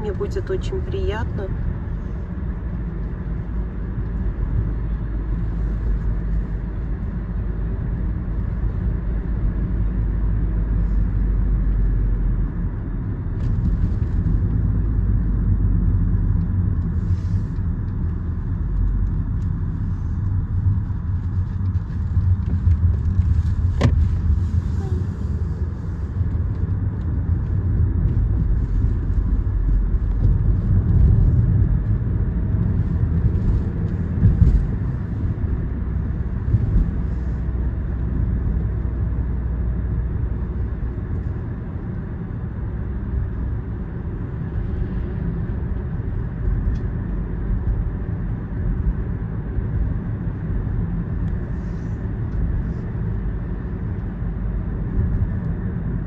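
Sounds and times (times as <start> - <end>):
car road and engine rumble: 0.0 - 56.0.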